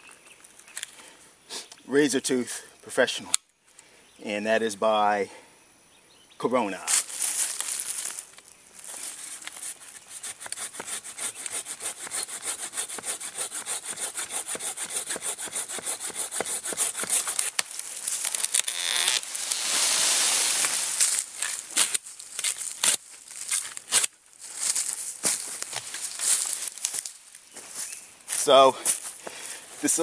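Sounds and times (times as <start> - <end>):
hand saw cutting tree trunk: 9.6 - 24.1
irregular scraping: 15.8 - 27.0.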